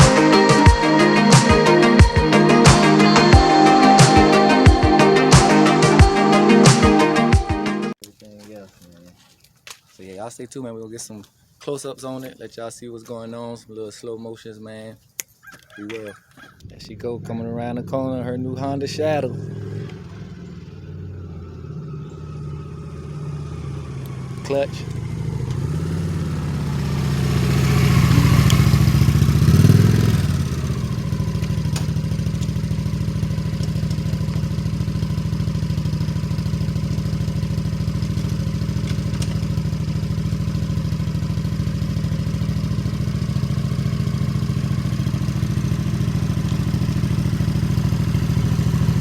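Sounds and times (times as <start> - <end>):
motorcycle engine idling: 17.0 - 49.0.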